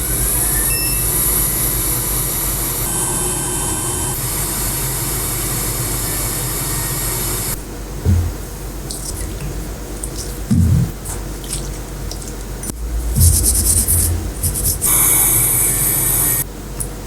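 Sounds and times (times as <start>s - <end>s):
faint hum: 0.0s - 17.0s
low thump: 8.0s - 8.5s, 10.5s - 11.0s, 12.7s - 14.9s
rushing blowing air: 12.7s - 16.4s.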